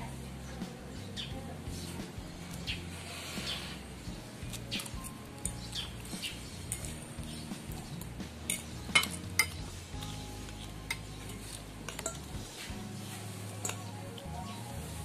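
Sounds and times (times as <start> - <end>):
cutlery clinking against dish: 8.5 - 9.6, 10.9 - 12.3.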